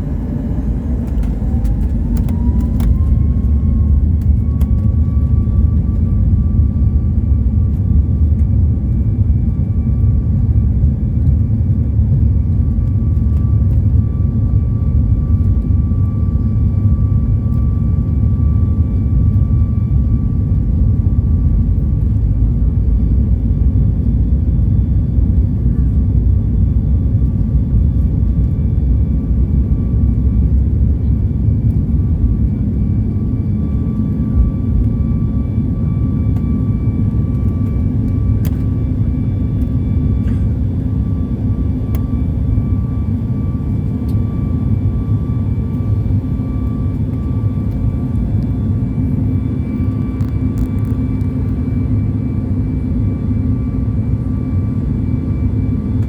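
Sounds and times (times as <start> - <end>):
low engine rumble: 0.0 - 24.1
faint constant whine: 33.0 - 56.0.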